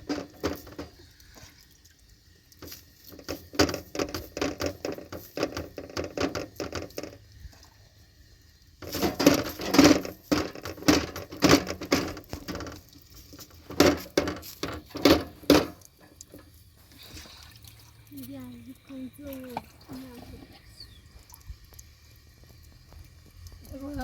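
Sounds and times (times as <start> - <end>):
hard objects knocking and clattering: 0.0 - 1.0, 3.1 - 7.2, 8.8 - 16.5.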